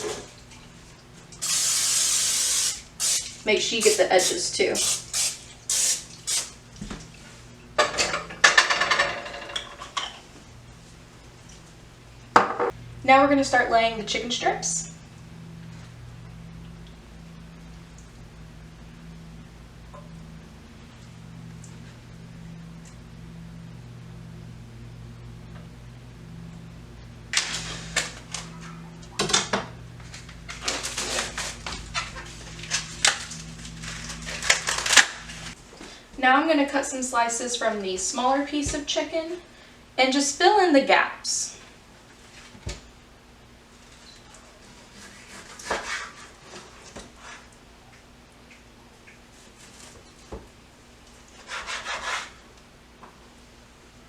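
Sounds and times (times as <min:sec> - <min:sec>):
steady low hum: 0:00.0 - 0:45.6
aerosol cooking spray hissing: 0:01.4 - 0:06.6.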